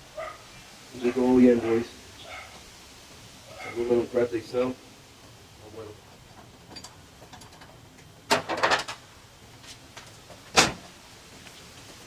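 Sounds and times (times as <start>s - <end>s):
metal hardware clinking: 6.4s - 9.0s.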